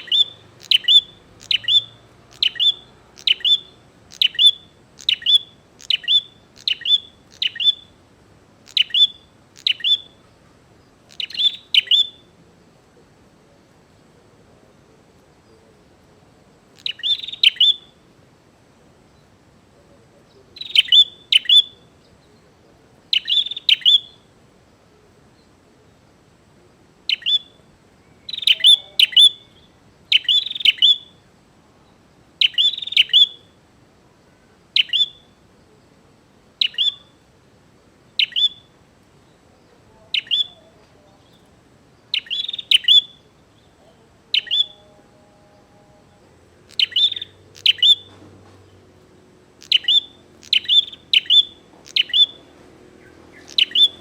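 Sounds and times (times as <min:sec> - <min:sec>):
bird chattering sharp chips: 0:00.0 - 0:07.7.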